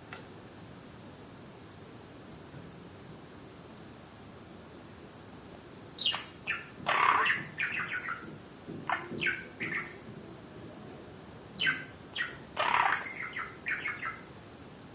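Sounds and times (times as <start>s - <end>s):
budgerigar chirping and chattering: 6.0s - 8.3s, 8.9s - 10.0s, 11.6s - 14.3s.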